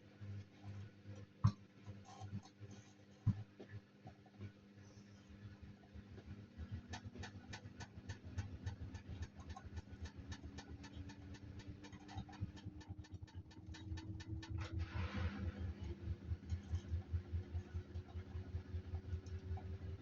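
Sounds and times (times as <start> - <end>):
washing machine motor hum: 0.0 - 20.0
washing machine ticking: 6.0 - 14.8.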